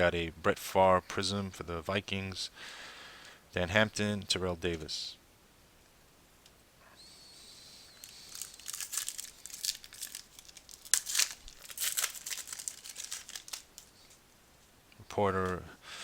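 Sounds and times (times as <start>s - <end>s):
foil wrapper tearing and crinkling: 8.0s - 14.1s.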